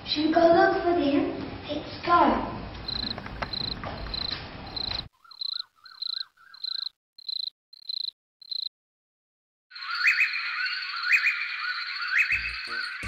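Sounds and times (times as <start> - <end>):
crickets chirping: 2.8 - 8.7
low repeated chirping call: 2.8 - 8.7, 9.7 - 13.0.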